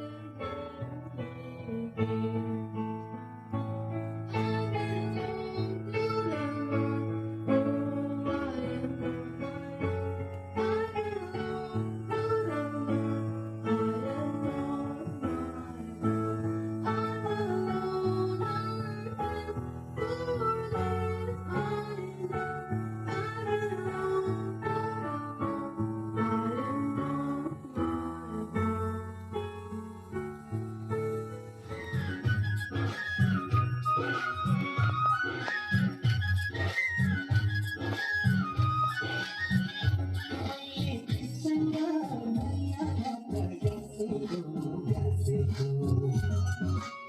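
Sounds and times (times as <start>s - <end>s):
person singing: 0.0s - 30.3s, 31.7s - 47.0s
held chords over bass line: 31.7s - 46.9s.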